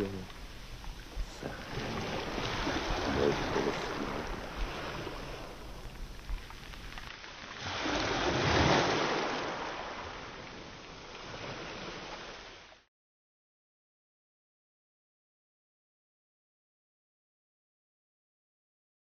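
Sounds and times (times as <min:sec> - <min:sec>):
sea surf washing in: 0:00.0 - 0:12.8.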